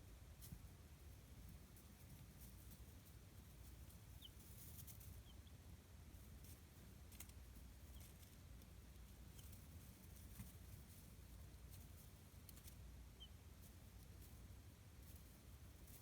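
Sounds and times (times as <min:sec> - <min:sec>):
chicks peeping: 0:01.8 - 0:05.6, 0:06.2 - 0:14.4
light clicks and scratching: 0:06.3 - 0:12.8.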